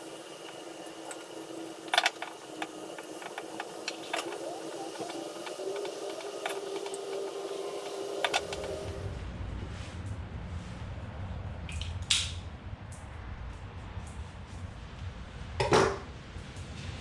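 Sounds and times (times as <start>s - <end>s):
steady hum: 0.0s - 9.4s.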